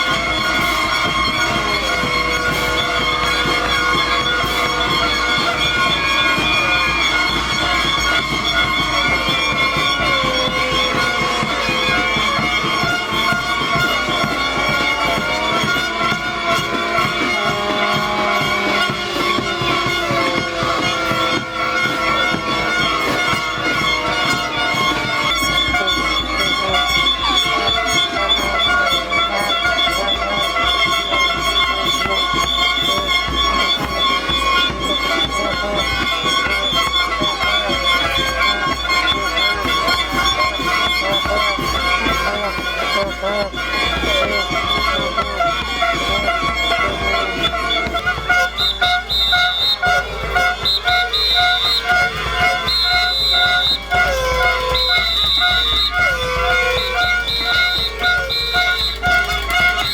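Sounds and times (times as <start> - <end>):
air horns sounding together: 0.0 - 59.9.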